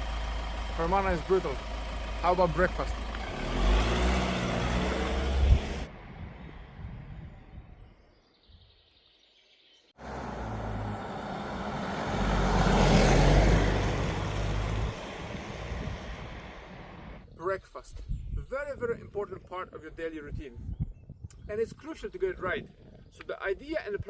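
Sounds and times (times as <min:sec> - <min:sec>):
road vehicle passing by: 0:00.0 - 0:06.8, 0:10.0 - 0:17.2.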